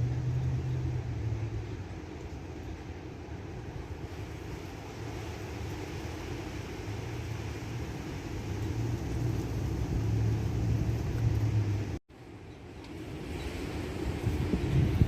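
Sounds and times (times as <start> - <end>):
wind buffeting microphone: 13.1 - 15.0.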